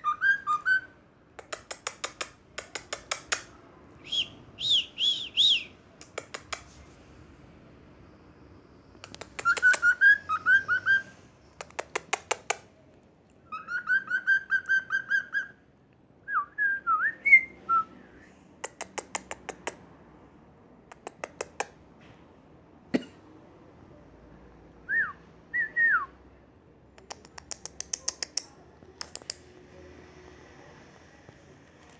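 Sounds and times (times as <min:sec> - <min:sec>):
sharp bird clicks: 0:01.4 - 0:03.6, 0:05.4 - 0:06.7, 0:09.0 - 0:10.0, 0:11.6 - 0:12.7, 0:18.6 - 0:19.8, 0:20.9 - 0:21.8, 0:27.0 - 0:29.5.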